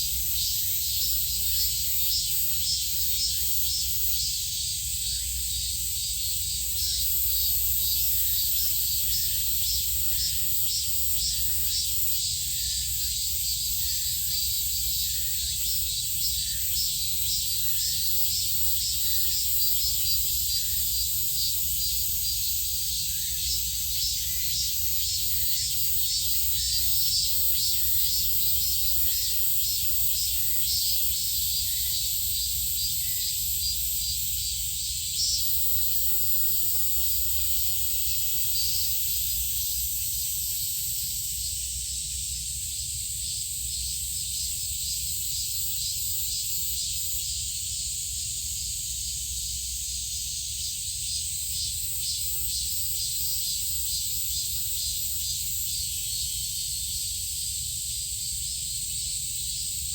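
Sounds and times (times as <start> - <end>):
insects pulsing hiss: 0.0 - 59.9.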